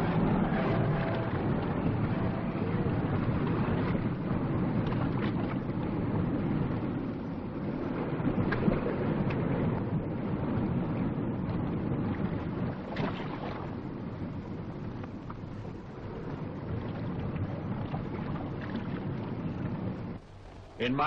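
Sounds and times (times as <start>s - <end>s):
wind and sea rushing: 0.0s - 21.0s.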